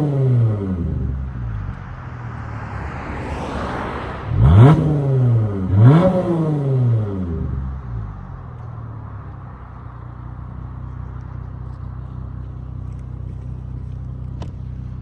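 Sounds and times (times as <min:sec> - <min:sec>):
car exhaust idling: 0:07.1 - 0:15.0.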